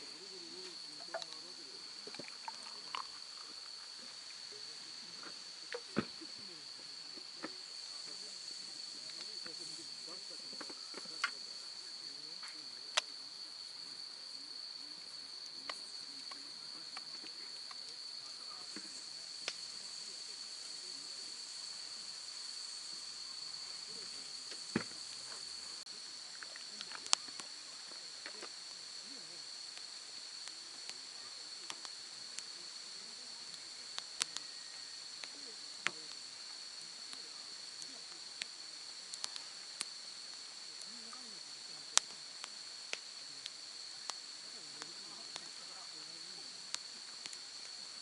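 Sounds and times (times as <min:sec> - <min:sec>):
crickets trilling: 0:00.0 - 0:48.0
sharp pops: 0:12.4 - 0:13.2.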